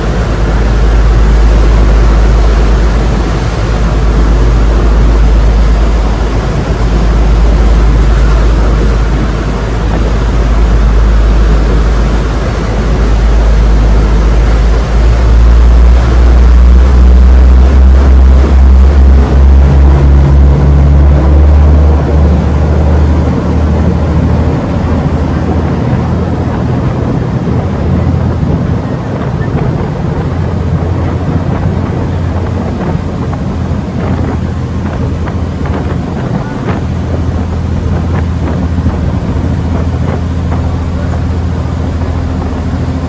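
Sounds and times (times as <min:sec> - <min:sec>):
diesel engine rumbling: 0:00.0 - 0:43.0.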